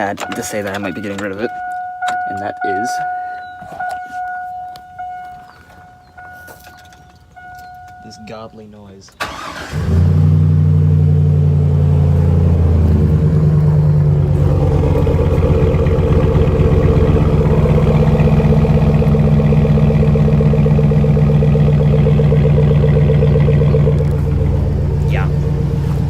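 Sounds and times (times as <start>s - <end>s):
truck engine idling: 9.2s - 26.0s.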